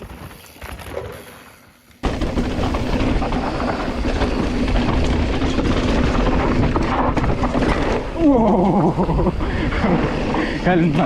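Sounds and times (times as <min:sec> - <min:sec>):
bike tyres clattering over rocks: 0:00.0 - 0:10.8.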